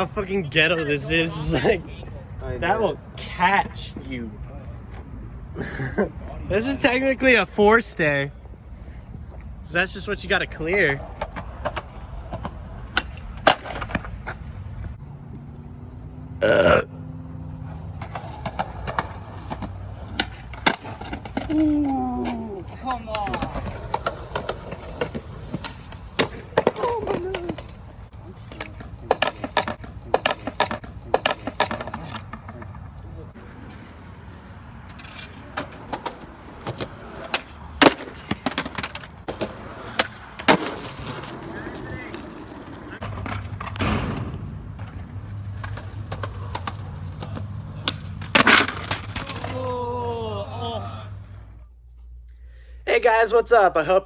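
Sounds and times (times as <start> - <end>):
skateboard wheels rolling hum: 10.5 - 51.9
skateboard clacking on concrete: 10.7 - 15.0, 17.6 - 33.8, 34.8 - 49.6
person yelling: 21.5 - 22.8, 26.7 - 27.6, 49.2 - 51.3.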